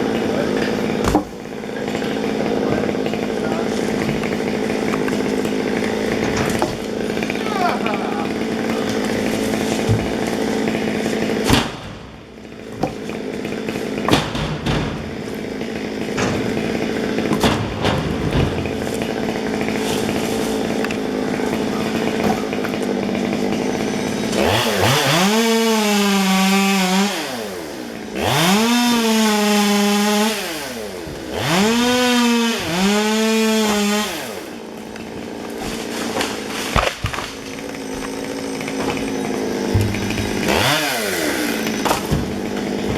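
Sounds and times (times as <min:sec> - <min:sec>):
chainsaw idling and revving: 0:00.0 - 0:42.9
sharp knocks: 0:09.7 - 0:10.4, 0:14.0 - 0:15.2, 0:38.6 - 0:42.9.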